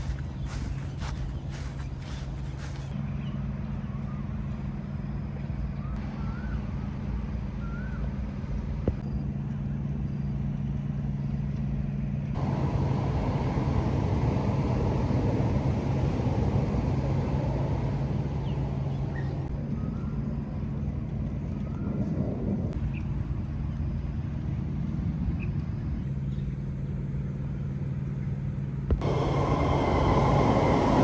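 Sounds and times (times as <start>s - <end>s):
road traffic rumble: 0.0s - 26.1s, 29.0s - 31.0s
vehicle passing: 12.4s - 19.6s, 29.0s - 31.0s.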